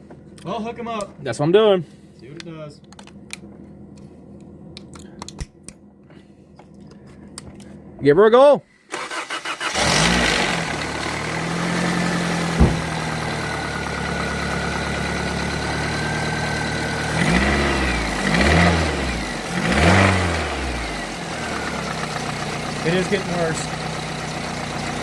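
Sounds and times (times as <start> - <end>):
car engine cranking and idling: 8.9 - 25.0
engine revving: 9.0 - 25.0.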